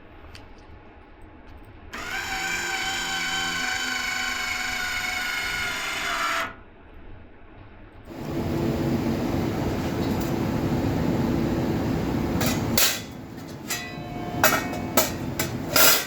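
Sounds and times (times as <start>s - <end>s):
rough machine noise with hum: 1.9s - 6.7s, 8.1s - 16.0s
electric power tool whining: 2.0s - 6.5s, 8.1s - 12.8s.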